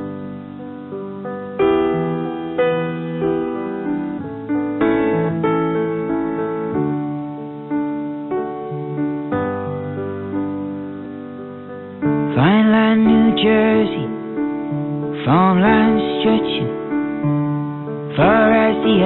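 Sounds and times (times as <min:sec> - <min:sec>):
slow solo piano chords: 0:00.0 - 0:19.0.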